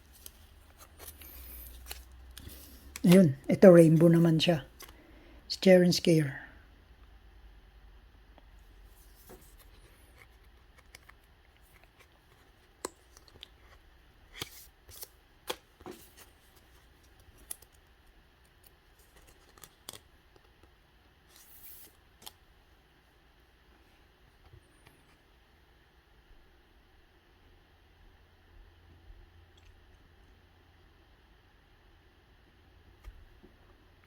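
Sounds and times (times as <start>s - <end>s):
cards clicking and rustling: 0.0s - 5.0s, 9.1s - 20.7s.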